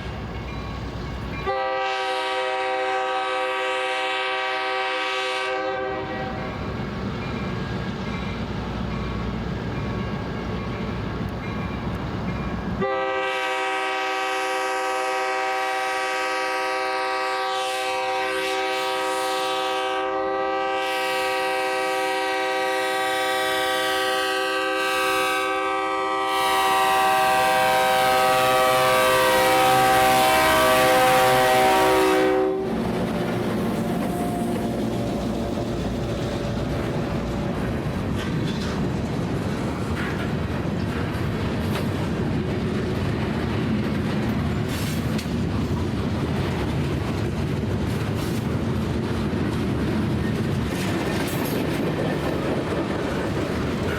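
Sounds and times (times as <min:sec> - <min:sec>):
train rumbling past: 0:00.0 - 0:53.9
locomotive air horn: 0:01.4 - 0:06.5, 0:12.8 - 0:32.8, 0:34.0 - 0:34.8.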